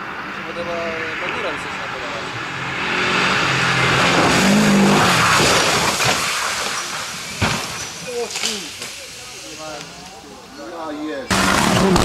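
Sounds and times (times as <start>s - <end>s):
rally car engine: 0.0s - 8.0s, 11.3s - 12.0s
tyres and road noise rushing: 0.0s - 12.0s.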